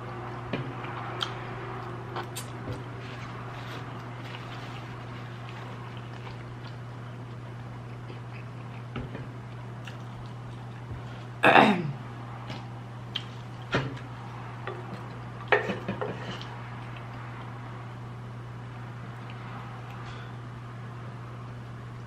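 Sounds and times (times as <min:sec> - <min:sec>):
wet chewing smacks and clicks: 0:09.5 - 0:10.8, 0:13.1 - 0:13.6
person clearing throat: 0:11.4 - 0:12.0.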